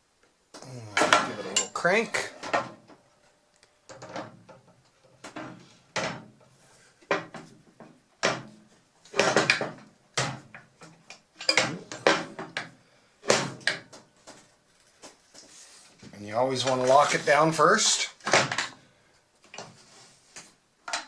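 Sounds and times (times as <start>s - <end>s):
metal clunks and knocks: 3.9s - 6.4s, 7.1s - 12.7s
metal sliding scrape: 16.8s - 17.6s.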